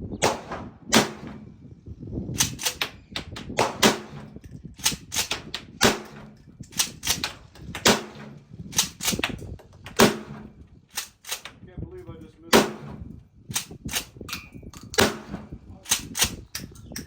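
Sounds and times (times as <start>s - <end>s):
shotgun firing: 0.2s - 1.4s, 2.4s - 11.5s, 12.5s - 14.2s, 15.0s - 16.4s.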